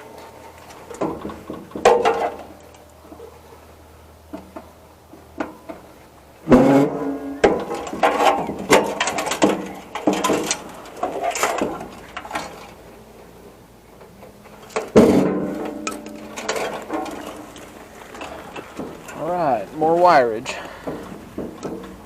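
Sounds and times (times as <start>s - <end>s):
metal parts clanking and rattling: 6.5s - 12.8s, 14.0s - 20.0s
loud ringing metal clangs: 14.9s - 17.7s.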